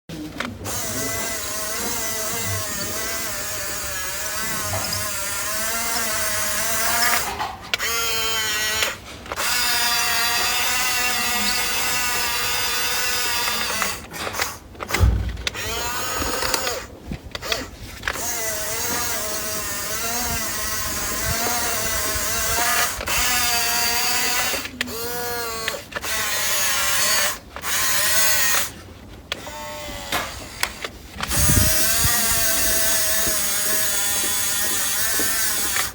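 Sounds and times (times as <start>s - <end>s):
toy car electric motor whining: 0.6s - 35.9s
low thumps: 15.0s - 15.6s.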